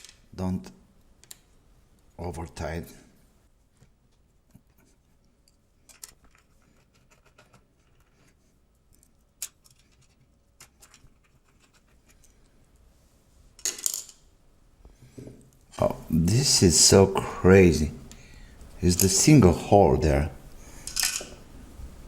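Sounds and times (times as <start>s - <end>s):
screws clicking and scratching: 5.5s - 12.3s.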